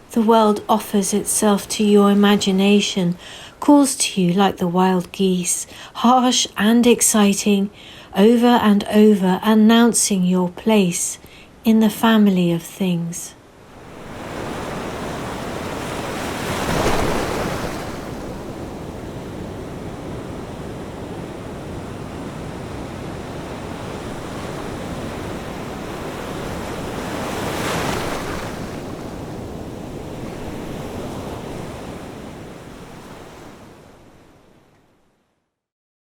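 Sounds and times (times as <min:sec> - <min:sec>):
sea waves washing onto shore: 0:13.6 - 0:33.8.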